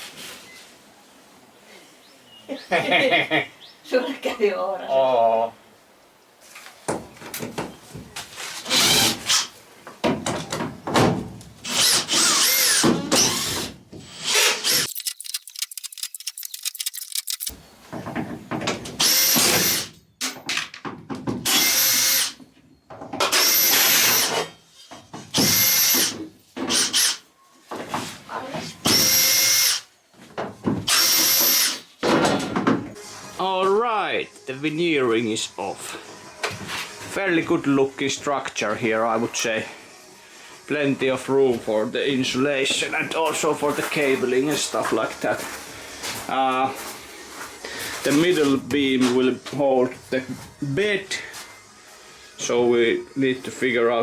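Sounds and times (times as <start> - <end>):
power drill driver running: 8.7 - 9.5, 11.6 - 17.5, 19.0 - 19.9, 21.5 - 22.4, 23.2 - 24.4, 25.4 - 27.2, 28.9 - 29.8, 30.9 - 31.8.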